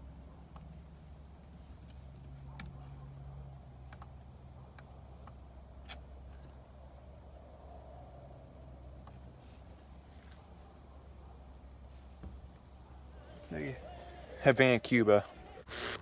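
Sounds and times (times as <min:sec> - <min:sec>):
faint radio hiss: 0:08.8 - 0:16.0.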